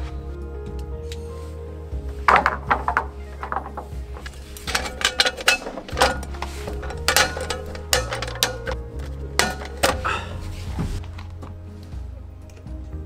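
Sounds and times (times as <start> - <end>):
background music with bass: 0.0 - 13.0
camping gear rattling: 1.9 - 12.1.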